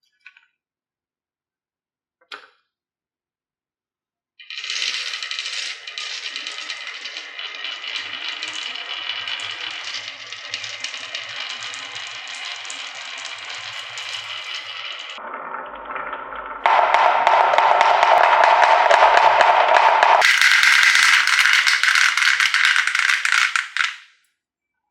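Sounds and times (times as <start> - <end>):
marbles rattling down wooden track: 4.4 - 15.2, 16.7 - 24.1.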